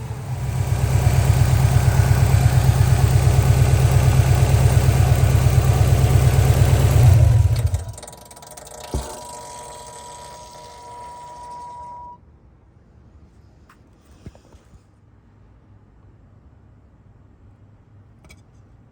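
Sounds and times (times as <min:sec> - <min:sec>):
car engine idling: 0:00.0 - 0:12.2
faint steady whine: 0:07.5 - 0:18.8.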